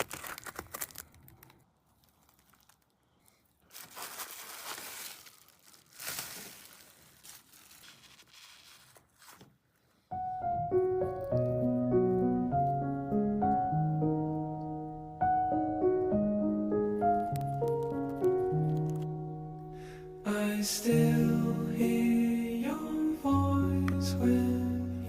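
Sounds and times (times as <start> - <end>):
crinkling handling noises: 0.0 - 10.0, 17.1 - 19.3
piano music: 10.1 - 25.0.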